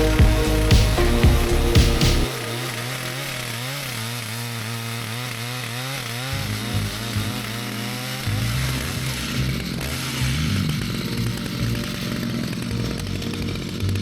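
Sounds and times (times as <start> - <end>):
chainsaw cutting: 0.0 - 14.0.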